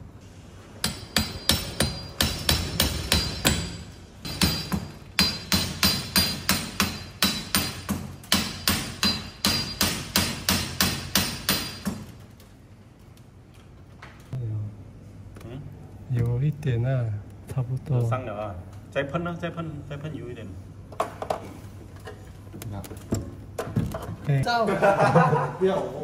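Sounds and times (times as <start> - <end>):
hammer tapping on metal: 0.8 - 12.0.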